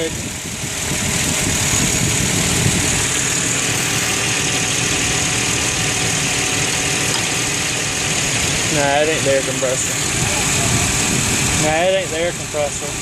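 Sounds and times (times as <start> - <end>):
car engine idling: 0.0 - 13.0
high-pitched engine squeal: 3.4 - 6.4, 9.5 - 11.6.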